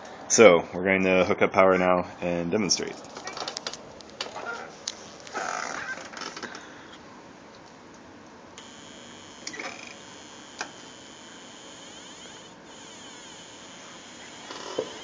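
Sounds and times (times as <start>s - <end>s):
thin high synthesizer buzz: 8.6s - 15.0s.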